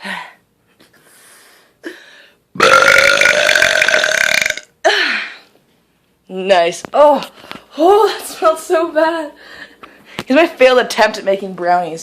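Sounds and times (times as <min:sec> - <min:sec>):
woman burping: 0:02.6 - 0:05.0.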